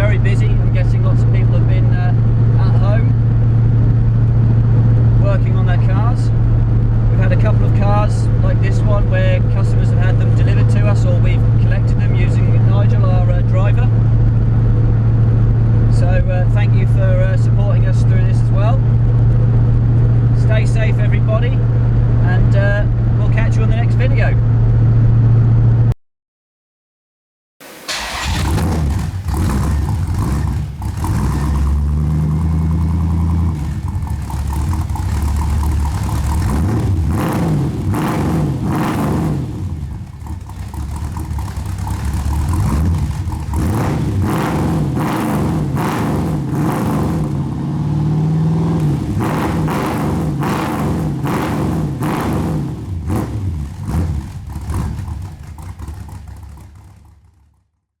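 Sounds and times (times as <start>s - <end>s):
car engine revving: 27.6s - 57.3s.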